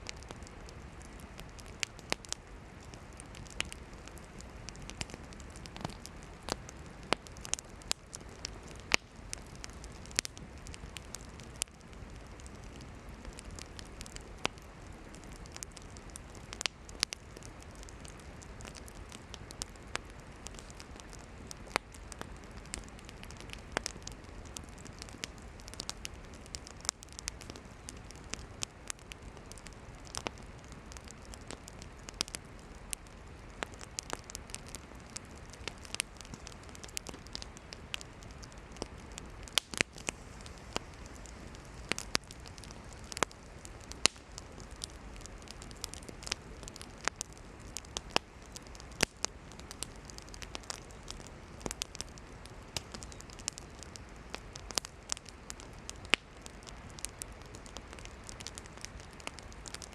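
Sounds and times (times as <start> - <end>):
campfire crackling: 0.0 - 59.9
firewood popping and snapping: 0.0 - 59.9
flames hissing: 0.0 - 59.9.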